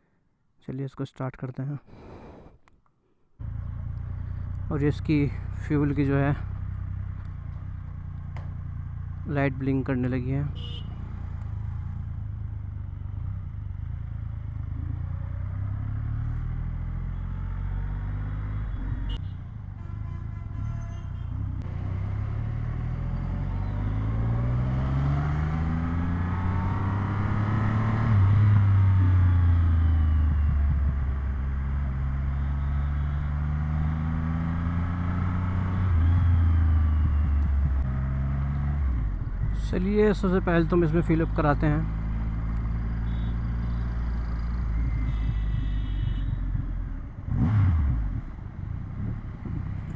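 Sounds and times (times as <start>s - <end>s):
motorcycle engine accelerating: 11.1s - 19.2s, 21.5s - 49.9s.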